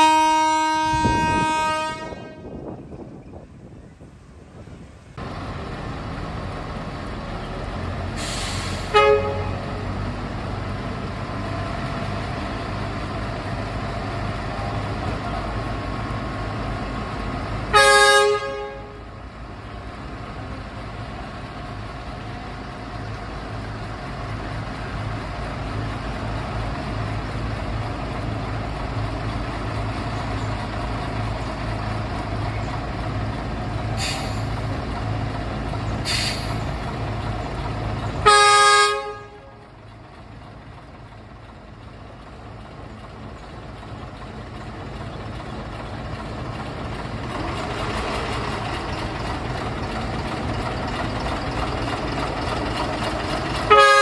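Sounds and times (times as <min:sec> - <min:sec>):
locomotive horn: 0:00.0 - 0:02.8, 0:08.2 - 0:10.2, 0:17.7 - 0:19.2, 0:38.2 - 0:39.8, 0:53.5 - 0:54.0
locomotive engine running: 0:00.0 - 0:54.0
brief hiss: 0:08.1 - 0:08.9, 0:34.0 - 0:34.6, 0:36.0 - 0:36.7.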